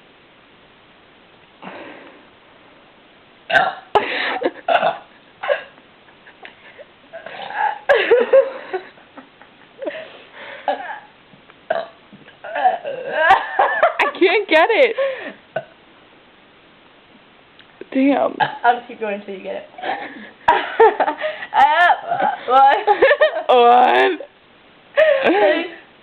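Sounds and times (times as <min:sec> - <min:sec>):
person burping: 0:03.5 - 0:04.0, 0:04.7 - 0:05.7, 0:11.7 - 0:13.4.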